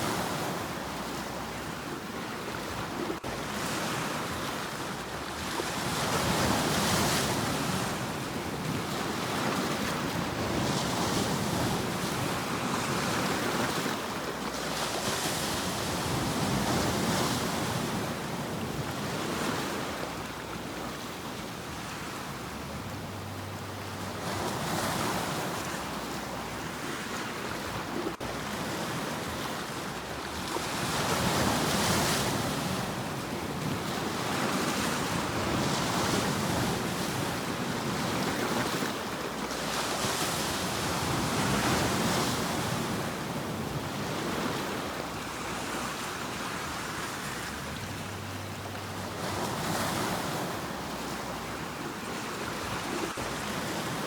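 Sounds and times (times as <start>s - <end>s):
ocean surf breaking on shore: 0.0s - 23.1s, 23.8s - 54.0s.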